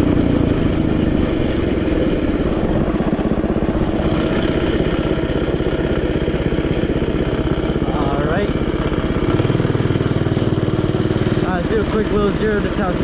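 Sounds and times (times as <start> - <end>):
mini bike engine running steadily: 0.0 - 13.0.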